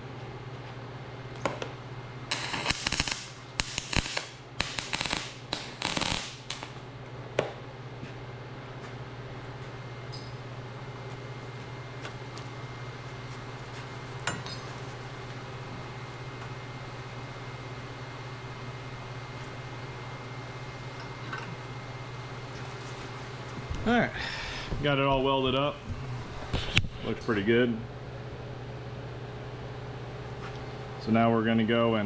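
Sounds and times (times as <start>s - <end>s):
steady low hum: 0.0s - 32.0s
arc welding crackling: 2.3s - 6.9s.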